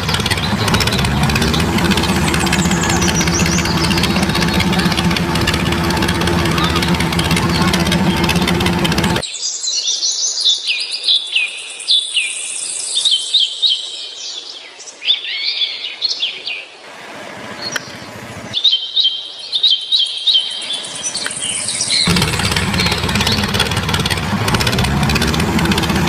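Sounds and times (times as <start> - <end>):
small birds chirping: 0.0 - 9.4, 17.4 - 26.0.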